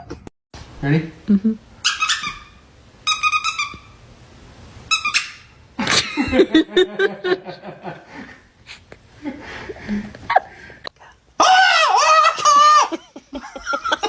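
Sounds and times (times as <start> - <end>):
short high squeak: 1.8 - 4.0, 4.9 - 5.6
dog yowling: 11.4 - 13.0.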